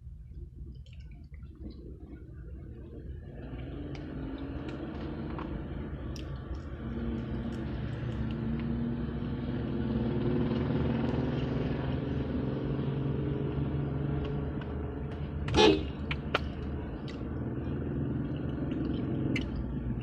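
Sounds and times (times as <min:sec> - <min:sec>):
car horn toot: 0:15.5 - 0:16.0.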